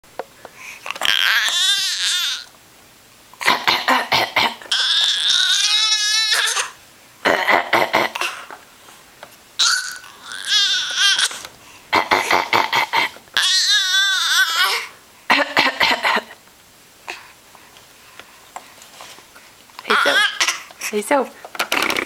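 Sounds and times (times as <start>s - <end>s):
child squealing and wailing: 1.0s - 2.5s, 4.7s - 6.8s, 9.6s - 11.4s, 13.4s - 14.9s, 19.9s - 20.6s.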